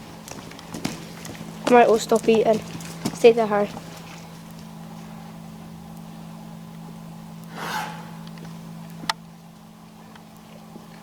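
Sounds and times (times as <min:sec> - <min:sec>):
low hum: 0:00.0 - 0:11.0
cow snorting: 0:07.5 - 0:08.4.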